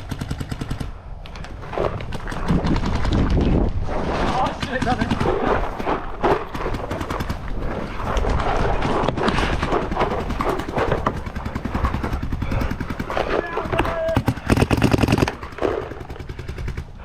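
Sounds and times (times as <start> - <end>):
wind buffeting microphone: 1.0 - 14.7
paintball markers firing: 8.2 - 17.0.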